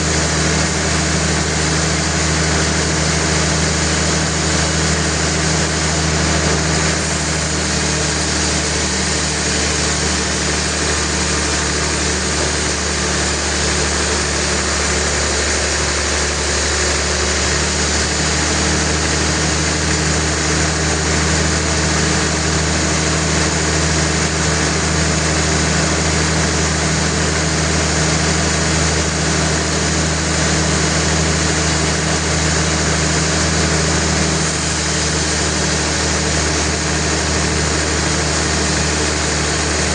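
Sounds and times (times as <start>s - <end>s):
dense machinery whirring: 0.0s - 39.9s
machinery engine hum: 0.0s - 39.9s.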